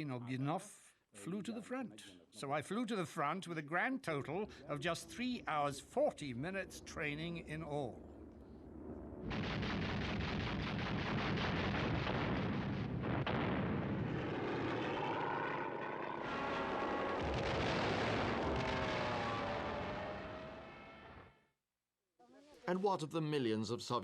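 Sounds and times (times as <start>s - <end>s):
aircraft engines running: 6.4s - 9.3s.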